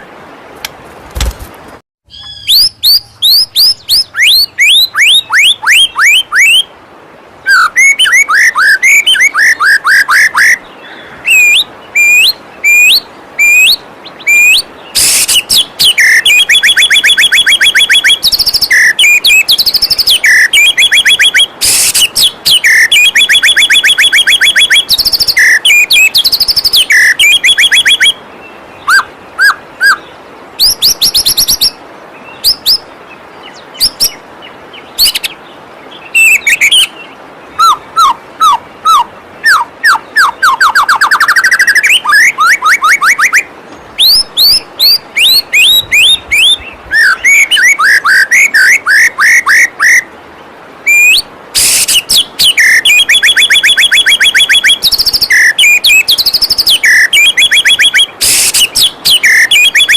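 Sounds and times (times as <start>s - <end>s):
bird singing: 2.1s - 6.7s, 7.4s - 50.1s, 50.9s - 59.9s
waterfall water rushing: 4.0s - 59.9s.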